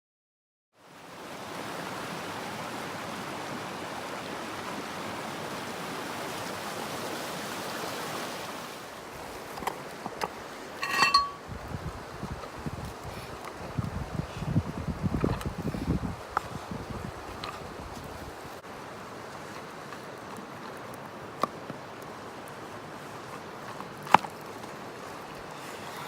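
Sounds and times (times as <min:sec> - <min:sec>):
river water rushing: 0:00.8 - 0:11.4, 0:16.1 - 0:26.0
wind rumble on microphone: 0:11.4 - 0:18.6.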